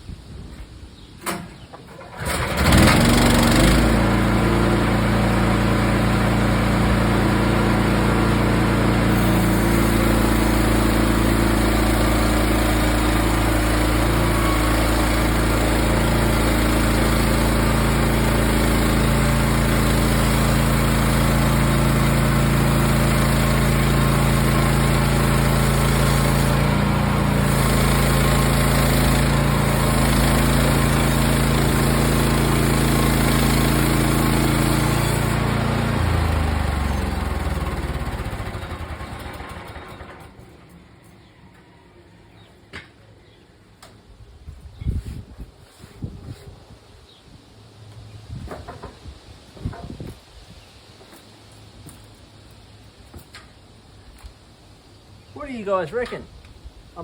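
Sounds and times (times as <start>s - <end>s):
sawmill petrol engine running: 1.2s - 41.6s.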